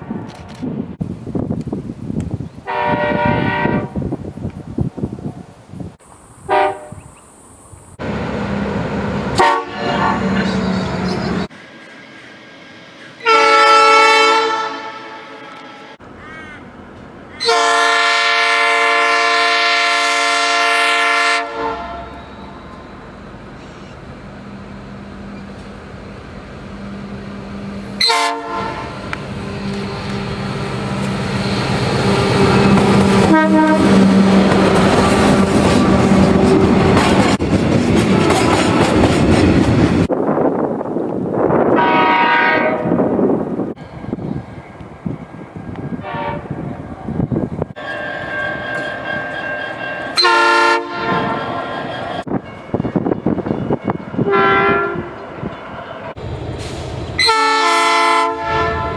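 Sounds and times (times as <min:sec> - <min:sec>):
train rumble and wheel noise: 0:00.0 - 0:58.9
train horn blasts: 0:02.6 - 0:04.0, 0:06.5 - 0:07.0, 0:09.4 - 0:11.4, 0:13.2 - 0:16.0, 0:17.4 - 0:23.1, 0:26.9 - 0:30.4, 0:32.2 - 0:34.6, 0:41.7 - 0:43.1, 0:46.0 - 0:46.7, 0:47.8 - 0:55.2, 0:57.2 - 0:58.9.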